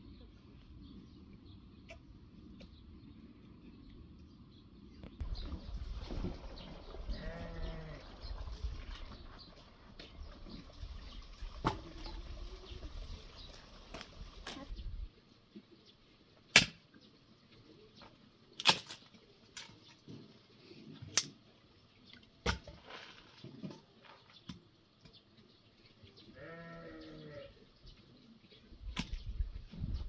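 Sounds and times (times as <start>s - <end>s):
farm animal bleating: 7.1s - 8.1s, 26.2s - 27.6s.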